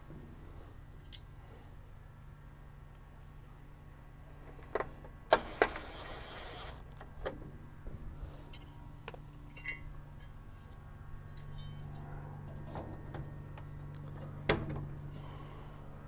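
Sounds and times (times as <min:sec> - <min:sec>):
clicks and knocks on metal cabinet: 0:14.2 - 0:15.0.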